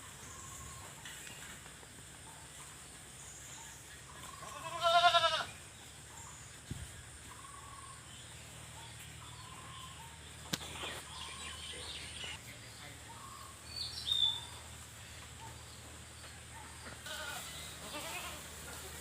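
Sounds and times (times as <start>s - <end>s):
goat bleating: 4.4s - 5.5s, 17.0s - 18.6s.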